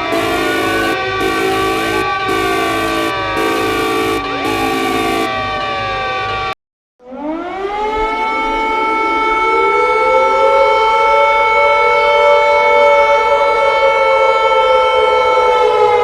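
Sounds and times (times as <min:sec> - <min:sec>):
alert tone: 0:00.0 - 0:05.4
emergency siren wailing: 0:00.0 - 0:16.0.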